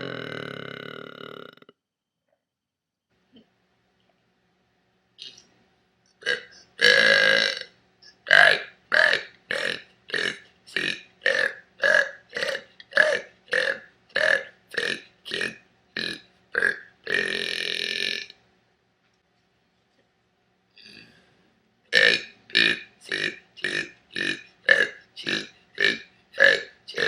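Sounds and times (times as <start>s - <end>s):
woman burping: 0.0s - 1.7s, 6.2s - 7.7s, 8.3s - 18.3s.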